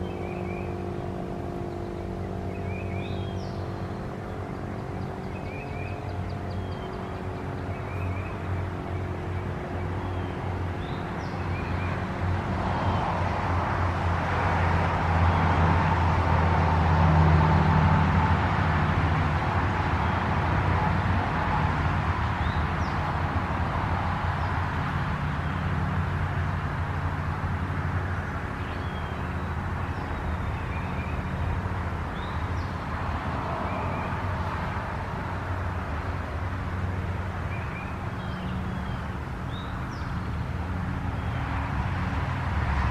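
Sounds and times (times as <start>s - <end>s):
small birds chirping: 0.0s - 12.1s, 22.4s - 23.0s, 28.1s - 32.9s, 37.4s - 41.6s.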